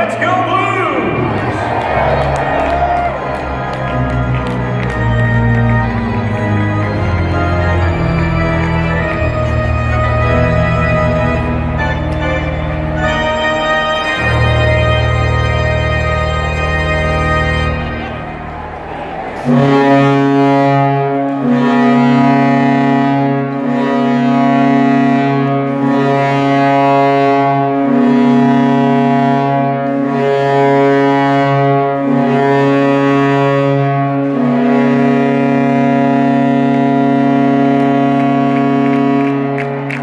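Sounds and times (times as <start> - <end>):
arena goal horn blowing: 0.0 - 40.0.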